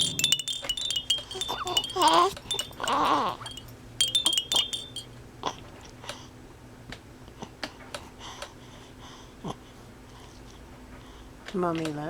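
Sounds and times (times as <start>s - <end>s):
small chime tinkling: 0.0s - 5.2s.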